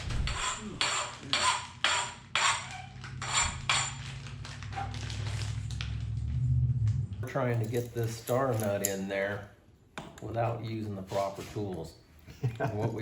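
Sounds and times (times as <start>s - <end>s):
hand file rasping on metal: 0.2s - 4.0s.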